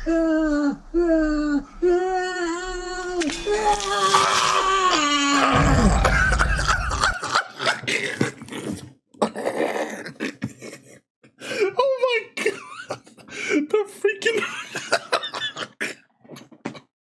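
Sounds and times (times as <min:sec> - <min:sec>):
wailing voice-like cry: 0:00.0 - 0:07.2
low rumble: 0:04.7 - 0:07.2.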